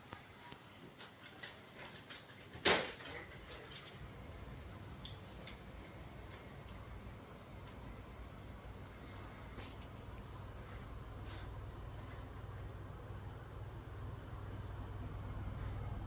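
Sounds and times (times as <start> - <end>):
steady low hum: 3.7 - 16.0.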